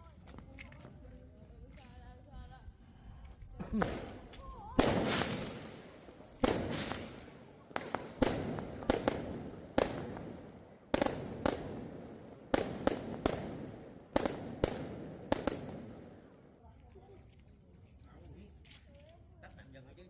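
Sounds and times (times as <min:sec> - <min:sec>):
fireworks bursting: 0:03.7 - 0:16.4.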